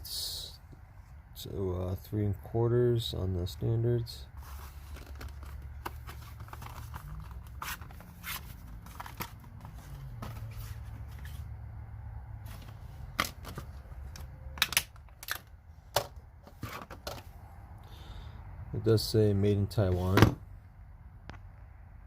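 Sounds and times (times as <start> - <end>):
packaging being handled: 4.4 - 11.4.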